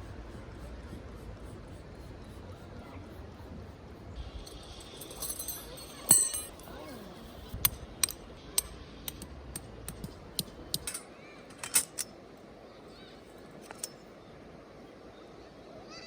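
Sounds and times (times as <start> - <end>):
sharp clicks and clinks: 4.4 - 6.7, 7.6 - 12.1, 13.6 - 14.1.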